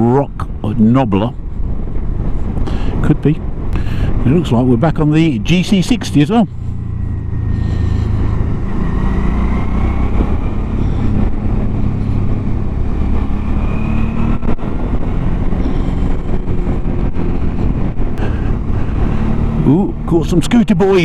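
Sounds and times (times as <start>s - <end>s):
wind and road noise: 0.0s - 21.0s
motorcycle engine running: 5.9s - 21.0s.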